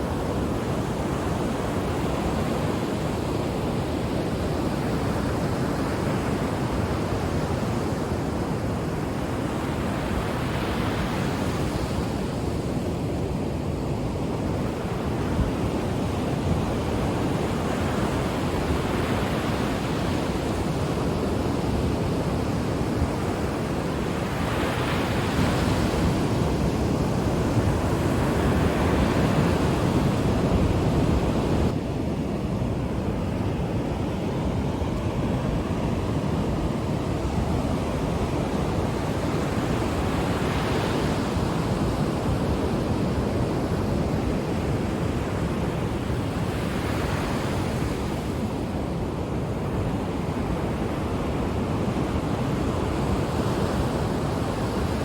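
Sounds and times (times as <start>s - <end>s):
ocean waves breaking: 13.3s - 55.0s.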